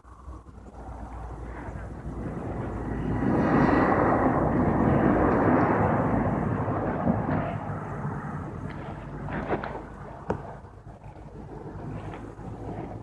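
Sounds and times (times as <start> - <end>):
vehicle passing by: 0.0 - 13.0.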